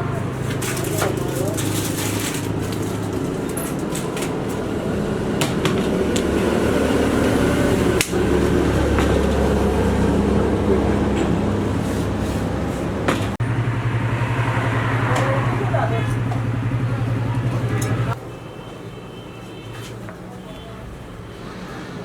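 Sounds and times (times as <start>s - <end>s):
machine motor humming: 4.8s - 18.2s.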